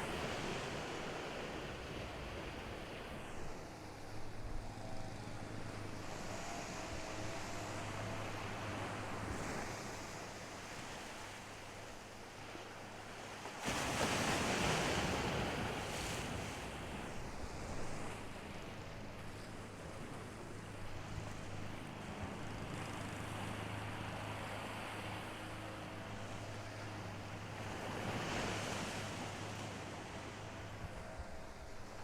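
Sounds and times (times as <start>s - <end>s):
ocean surf on a beach: 0.0s - 32.0s
wave breaking: 23.5s - 32.0s.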